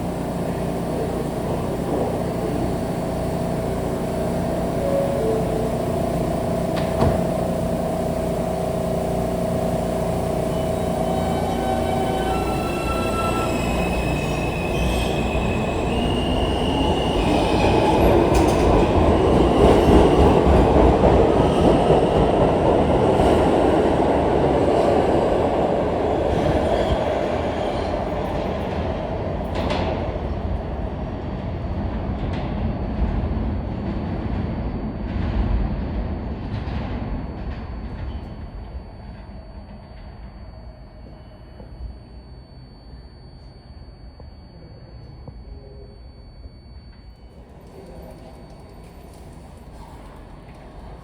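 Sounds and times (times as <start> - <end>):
motor whine: 0.0 - 18.6
subway train wheel and rail noise: 0.0 - 51.0.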